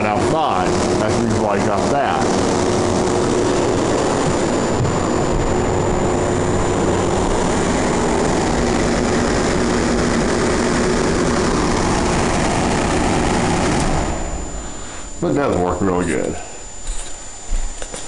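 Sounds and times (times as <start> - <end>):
air conditioner fan rushing: 0.0 - 18.0
air conditioner hum: 0.0 - 18.0.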